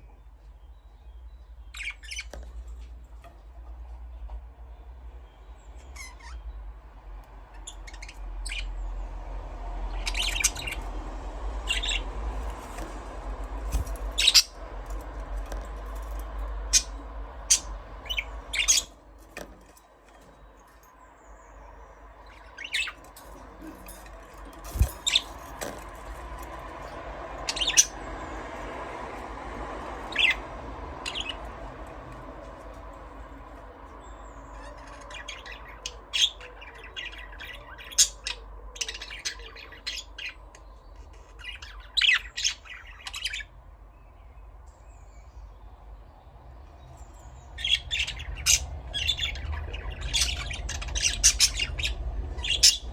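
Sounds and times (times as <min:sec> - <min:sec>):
budgerigars chirping: 0:05.8 - 0:06.5, 0:07.5 - 0:08.8, 0:09.9 - 0:10.9, 0:11.6 - 0:12.9, 0:13.7 - 0:14.6, 0:16.7 - 0:19.0, 0:22.2 - 0:25.8, 0:27.4 - 0:28.2, 0:30.0 - 0:31.7, 0:34.0 - 0:40.5, 0:47.6 - 0:52.9.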